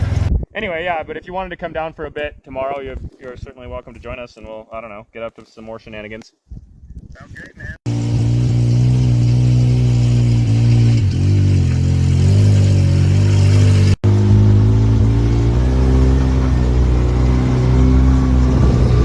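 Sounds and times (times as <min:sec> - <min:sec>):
small truck engine running: 0:07.9 - 0:19.0.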